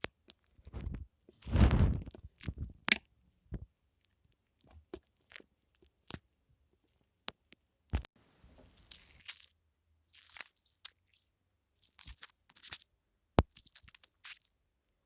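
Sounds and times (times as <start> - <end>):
foam crushing: 0.8 - 2.7.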